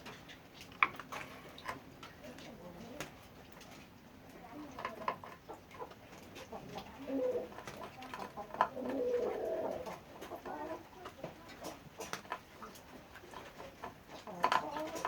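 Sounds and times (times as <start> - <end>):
pigeons cooing: 4.5 - 13.4.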